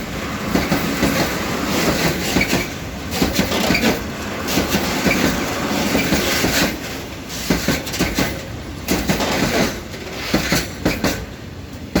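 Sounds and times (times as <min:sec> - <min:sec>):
train rumble: 0:00.0 - 0:12.0
train wheels clattering: 0:00.4 - 0:12.0.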